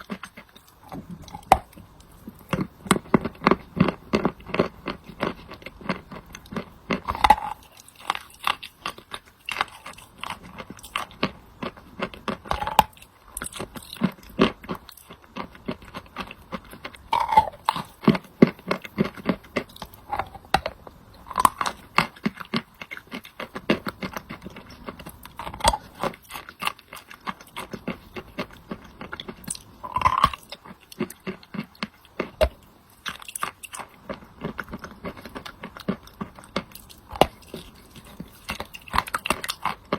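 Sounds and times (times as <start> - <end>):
chewing chalk crunching: 0.0 - 39.9.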